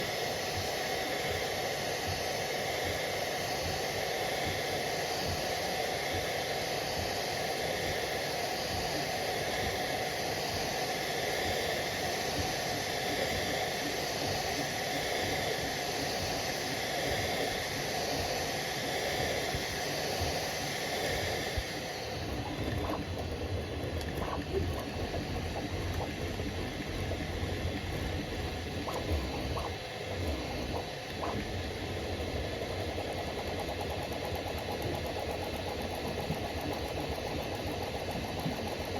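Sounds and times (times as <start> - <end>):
printer fan hiss: 0.0 - 38.9
low hum: 22.2 - 38.6.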